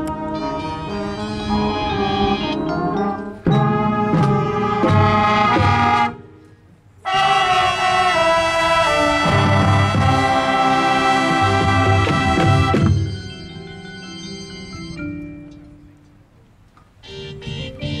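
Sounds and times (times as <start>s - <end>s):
marching band brass playing: 0.0s - 6.4s, 7.0s - 14.7s, 17.0s - 18.0s
low brass sustained chord: 7.0s - 13.1s.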